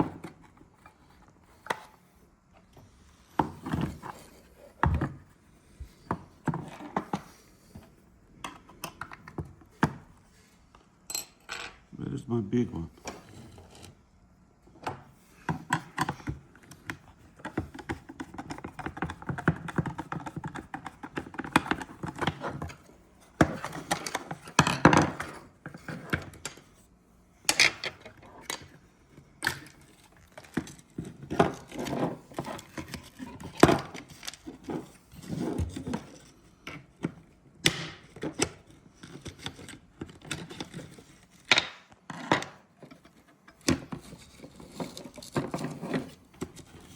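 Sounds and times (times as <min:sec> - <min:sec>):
tools and plastic parts clattering: 0:14.8 - 0:26.8, 0:27.4 - 0:46.9
scraping and rubbing: 0:42.9 - 0:46.9.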